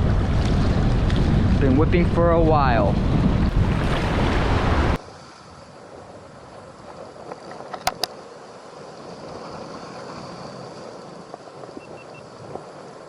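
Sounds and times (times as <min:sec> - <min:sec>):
wind buffeting microphone: 0:00.0 - 0:05.0
wind and surf rushing: 0:00.0 - 0:13.0.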